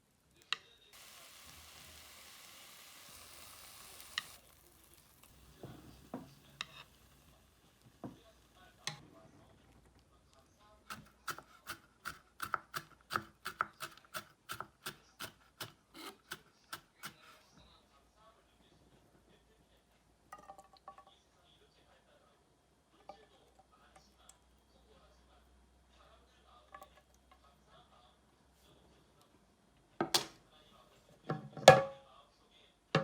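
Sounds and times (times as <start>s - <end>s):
frying sizzle: 1.0s - 9.0s.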